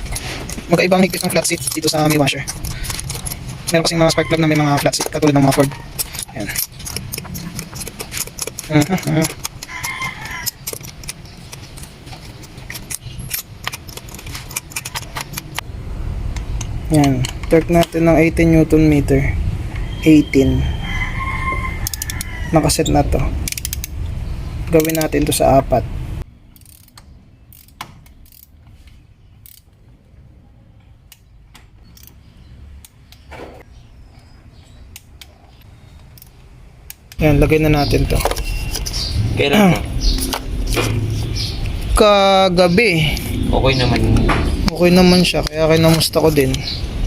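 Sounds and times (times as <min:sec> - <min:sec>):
ratchet clicking: 0:00.8 - 0:15.6, 0:21.8 - 0:22.3, 0:23.4 - 0:24.0, 0:24.7 - 0:25.2, 0:26.6 - 0:28.5, 0:29.4 - 0:29.7
torque wrench ratchet clicking: 0:21.8 - 0:22.2, 0:23.5 - 0:23.9, 0:24.8 - 0:25.2, 0:26.6 - 0:28.5, 0:29.4 - 0:29.7.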